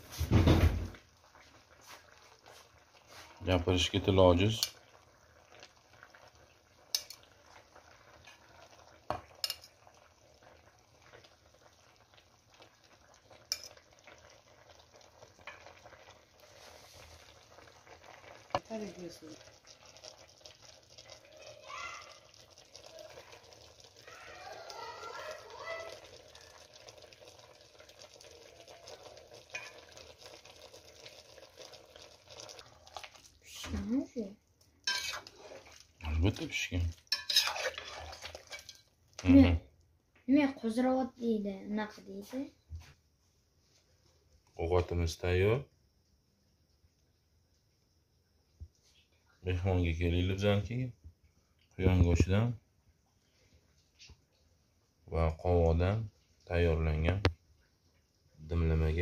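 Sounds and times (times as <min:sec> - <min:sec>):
faint sizzle from pot: 0:00.0 - 0:59.0
metal utensil clinking on pot: 0:06.9 - 0:07.2, 0:09.2 - 0:09.8, 0:13.5 - 0:13.8, 0:34.8 - 0:35.3, 0:37.1 - 0:38.8.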